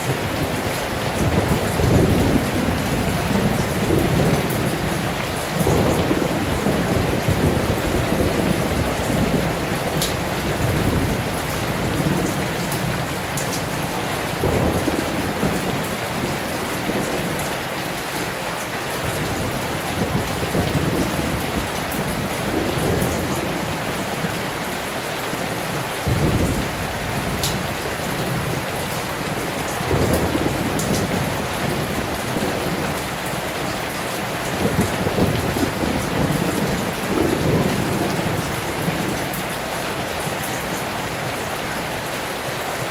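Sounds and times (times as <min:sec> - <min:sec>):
heavy rain: 0:00.0 - 0:42.9
low rumbling storm wind: 0:00.0 - 0:42.9
sharp drip ticks: 0:27.4 - 0:27.6.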